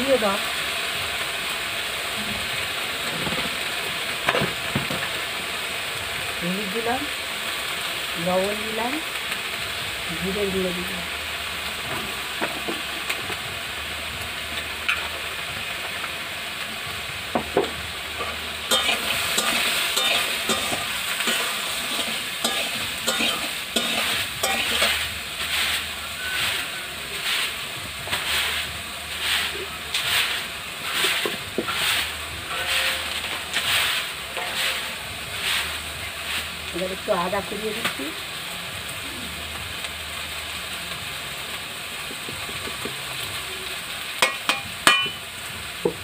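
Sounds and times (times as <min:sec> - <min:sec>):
vegetables sizzling in oil: 0:00.0 - 0:46.0
spatula stirring and scraping: 0:18.2 - 0:36.8.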